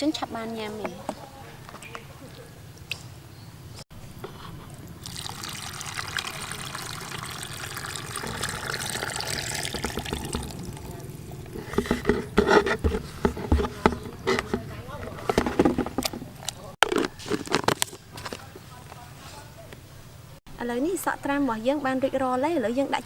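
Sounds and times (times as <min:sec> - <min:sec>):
liquid pouring: 0:04.4 - 0:14.5
knocks and clatter: 0:09.4 - 0:18.5.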